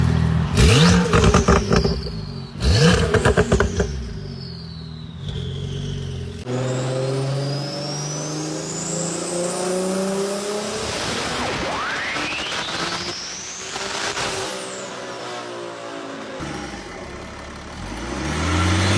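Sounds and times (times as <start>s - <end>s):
car engine revving: 0.0s - 18.9s
turbo whistle: 0.7s - 10.1s
chattering turbo flutter: 10.6s - 15.4s
car engine running steadily: 16.4s - 18.9s.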